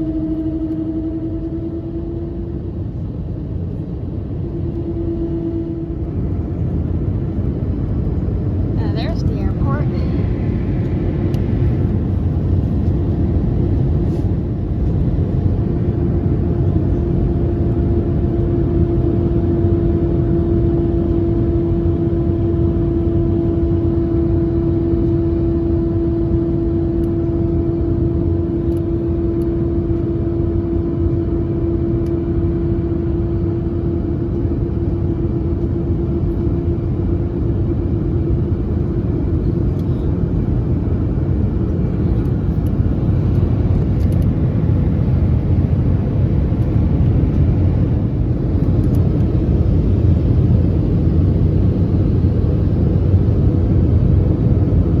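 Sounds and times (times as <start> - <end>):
droning tone: 0.0 - 34.8
airplane cabin noise: 0.0 - 55.0.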